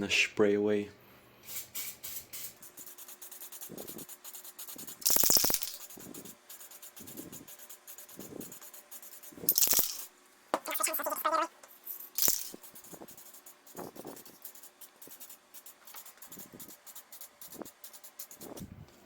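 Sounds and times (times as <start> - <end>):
aerosol spray can hissing: 1.5 - 10.0, 12.2 - 18.6.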